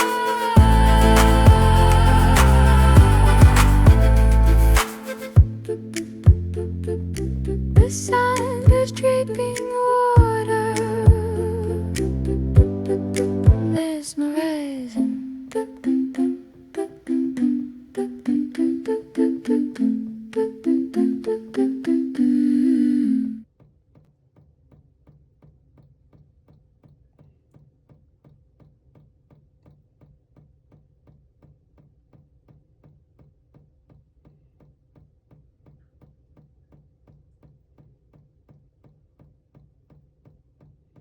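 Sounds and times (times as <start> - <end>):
keyboard music: 0.0 - 14.0.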